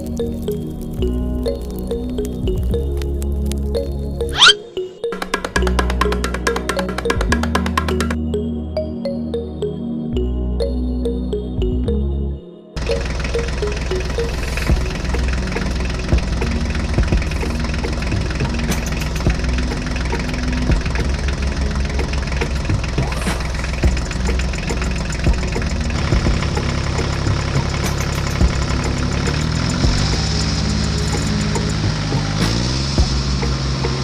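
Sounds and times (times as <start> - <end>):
engine idling with knocking: 5.1 - 8.2, 12.8 - 34.0
deep steady drone: 12.0 - 34.0.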